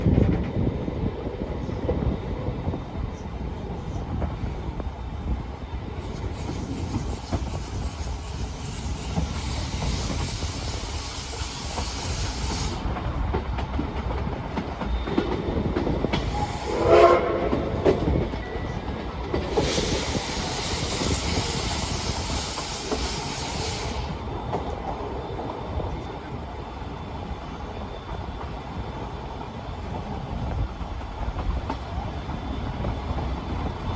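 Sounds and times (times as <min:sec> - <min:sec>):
train wheels clacking on rails: 0:03.7 - 0:33.9
high hiss: 0:05.9 - 0:13.0, 0:19.5 - 0:24.4
locomotive whistle: 0:16.3 - 0:18.8.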